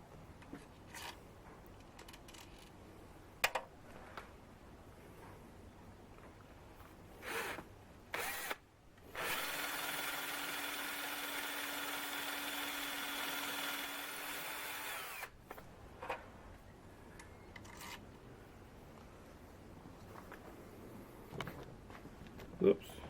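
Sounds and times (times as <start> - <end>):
power drill drilling into metal: 8.2 - 15.4.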